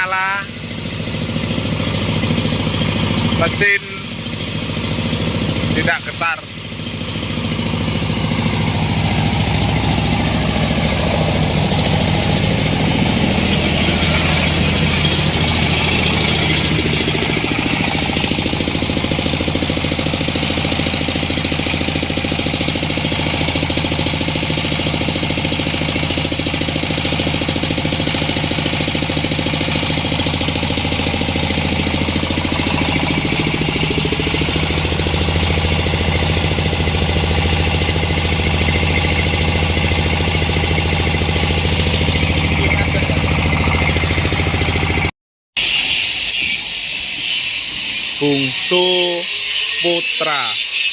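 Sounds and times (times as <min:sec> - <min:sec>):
diesel engine running: 0:00.0 - 0:50.9.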